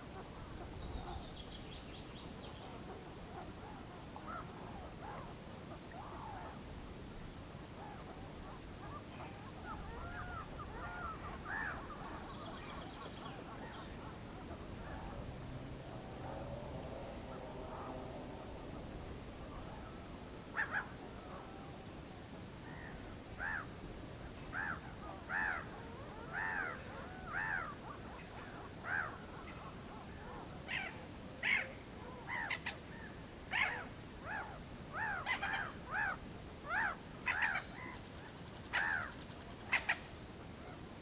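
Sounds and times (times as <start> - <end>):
bird calling: 24.5 - 40.2.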